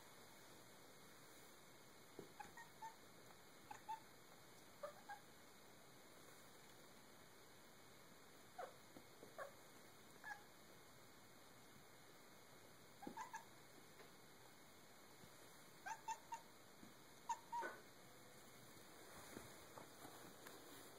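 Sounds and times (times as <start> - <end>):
cat chirping: 2.4 - 3.0, 3.6 - 4.1, 4.8 - 5.3, 10.2 - 10.5, 13.0 - 13.5, 15.8 - 16.5, 17.2 - 17.8.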